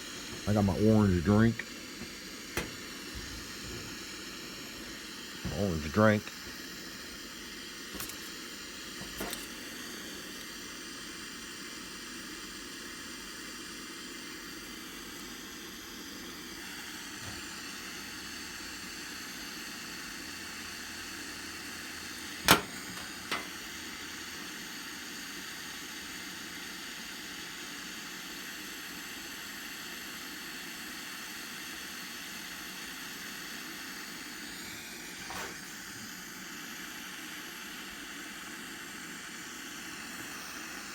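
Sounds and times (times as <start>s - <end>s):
soldering torch hissing: 0.0s - 26.6s, 32.7s - 40.9s
sharp click: 2.6s - 3.9s, 22.5s - 23.6s.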